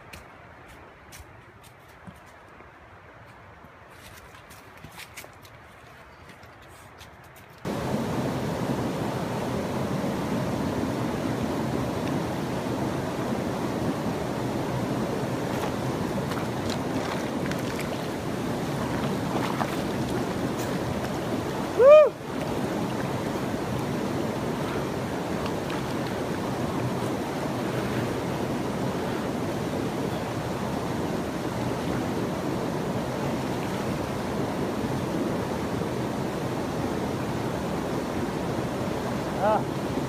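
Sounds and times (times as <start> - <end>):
rushing water: 7.6 - 40.0.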